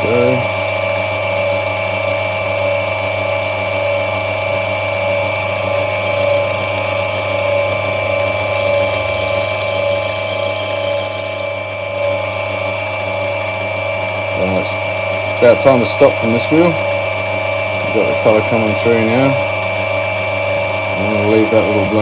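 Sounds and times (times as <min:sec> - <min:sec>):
grinding wheel motor whine: 0:08.6 - 0:11.5.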